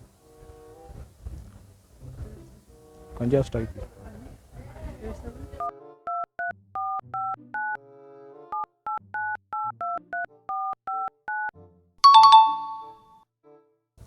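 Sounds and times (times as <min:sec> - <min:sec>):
phone keypad beeps: 0:05.6 - 0:07.8, 0:08.6 - 0:13.0
bright ringing chime: 0:12.0 - 0:13.0.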